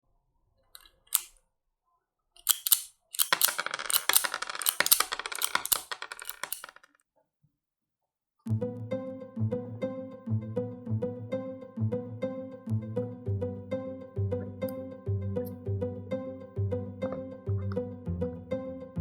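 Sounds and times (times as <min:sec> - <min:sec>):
clicking of small hard objects: 0:02.4 - 0:07.0
plucked string music: 0:08.5 - 0:19.0.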